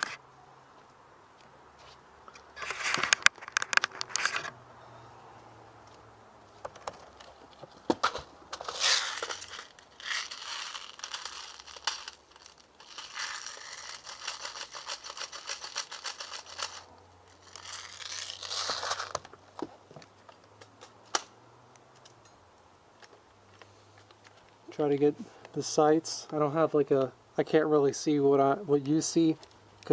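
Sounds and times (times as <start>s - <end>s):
airsoft gun rattling: 8.0s - 19.3s.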